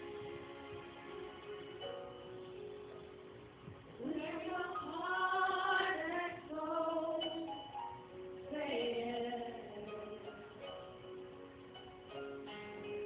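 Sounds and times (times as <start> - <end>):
soft instrumental accompaniment: 0.0 - 13.0
person singing: 8.5 - 10.7.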